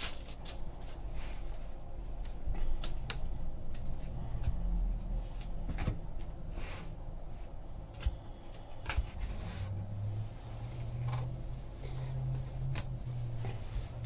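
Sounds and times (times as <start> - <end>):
card pack rustle: 0.0 - 1.6.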